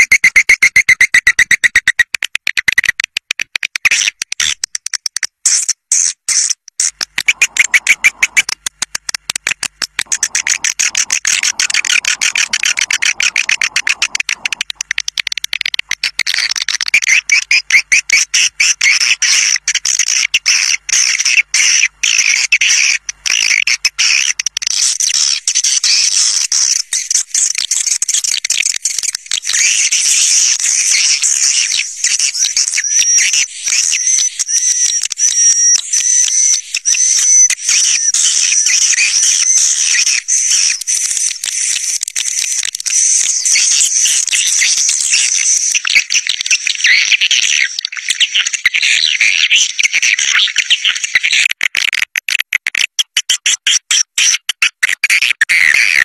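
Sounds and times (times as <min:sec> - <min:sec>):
swiftlets chirping and clicking: 0:00.0 - 0:19.0, 0:23.0 - 0:46.9.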